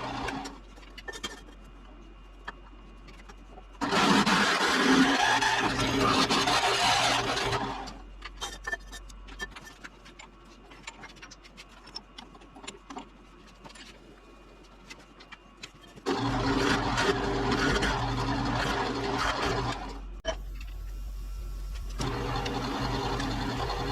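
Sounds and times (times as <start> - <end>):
electric machine humming: 16.0 - 23.9.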